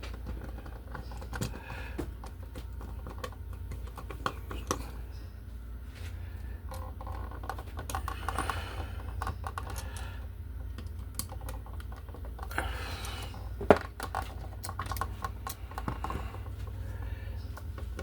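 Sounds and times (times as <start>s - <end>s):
clicks and taps on plastic: 0.0s - 4.9s, 13.2s - 18.0s
steady low hum: 0.0s - 18.0s.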